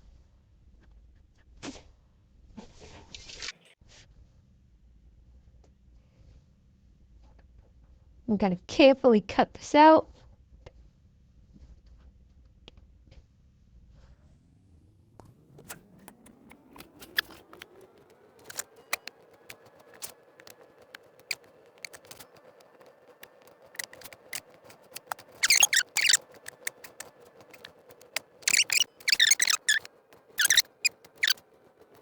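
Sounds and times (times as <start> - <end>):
clicks: 15.6 - 32.0
harsh cutting into plastic: 15.6 - 32.0.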